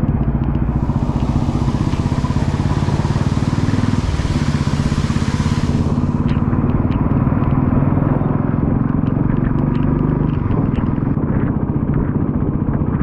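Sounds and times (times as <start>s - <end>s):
motorcycle engine running: 0.0s - 13.0s
steady hiss: 0.6s - 8.2s.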